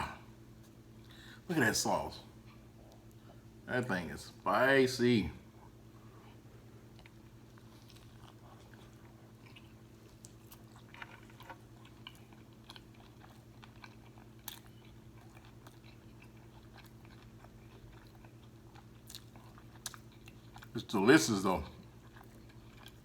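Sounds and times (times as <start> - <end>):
chewing crispy food: 5.7 - 23.0.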